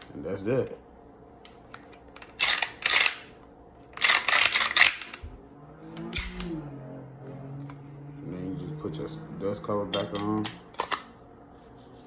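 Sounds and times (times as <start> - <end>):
pistol parts clacking: 2.2 - 3.3, 3.9 - 5.2
pistol slide rattling: 2.4 - 3.2.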